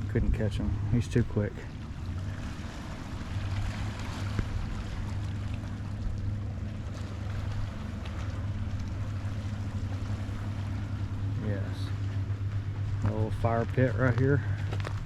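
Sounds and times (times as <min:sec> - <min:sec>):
boat engines droning: 0:00.0 - 0:15.0.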